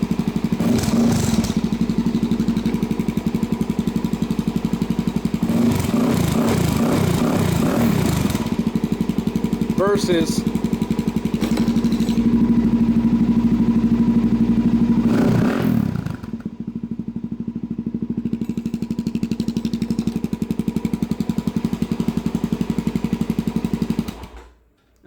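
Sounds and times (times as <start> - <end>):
clatter and scrape at muffler: 0.0 - 9.8, 10.4 - 16.7
motorcycle engine idling thumping: 0.0 - 24.5.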